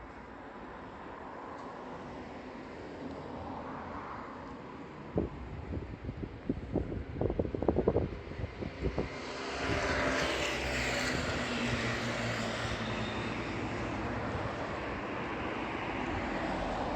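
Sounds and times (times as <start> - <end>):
passing engine: 8.2 - 16.9.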